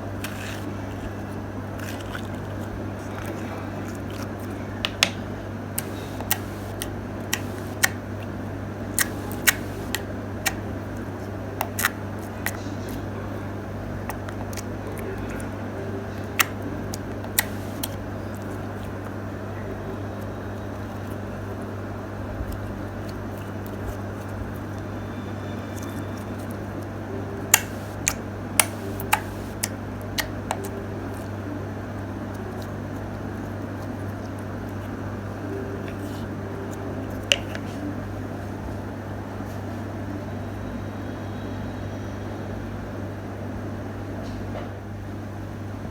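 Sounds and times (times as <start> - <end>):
steady low hum: 0.0 - 44.0
slime popping and clicking: 5.8 - 8.0, 9.0 - 10.6, 27.5 - 30.7.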